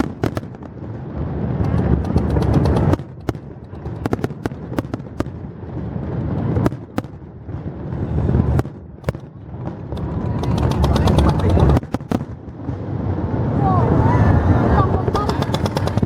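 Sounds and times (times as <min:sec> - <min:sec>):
fireworks bangs and crackles: 0:00.0 - 0:16.0
low rumble of fireworks: 0:00.0 - 0:16.0.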